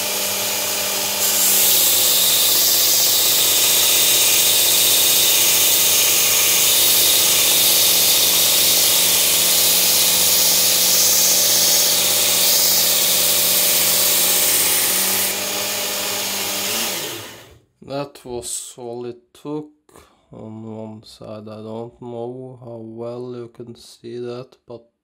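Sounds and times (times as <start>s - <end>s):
belt sharpener motor hum: 0.0s - 17.6s.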